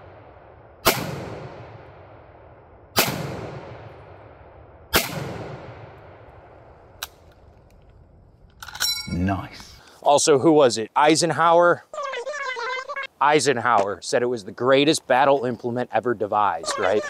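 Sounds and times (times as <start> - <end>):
rifle shots echoing: 0.0 - 7.2.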